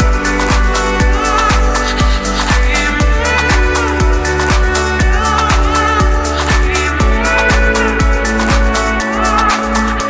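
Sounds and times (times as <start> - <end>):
deep house music: 0.0 - 10.0.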